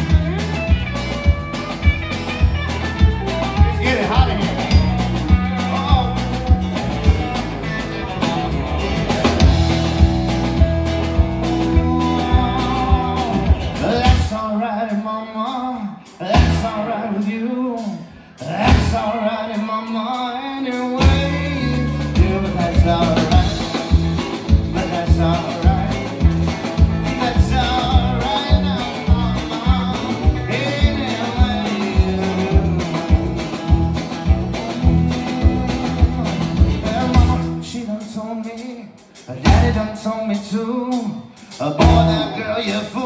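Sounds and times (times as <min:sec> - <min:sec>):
bending melody line: 0:00.0 - 0:14.3, 0:21.0 - 0:37.8
live country band playing: 0:00.0 - 0:43.0.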